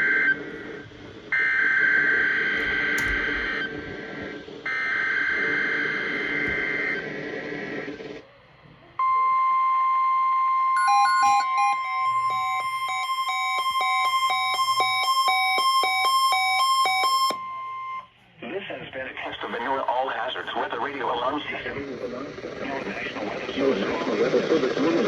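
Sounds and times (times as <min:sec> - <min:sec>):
rapid electronic alarm beeps: 0:00.0 - 0:03.8, 0:04.7 - 0:07.2, 0:09.0 - 0:18.1
steady warning alarm tone: 0:00.0 - 0:07.9, 0:09.0 - 0:18.1
warbling digital data tones: 0:21.2 - 0:25.0.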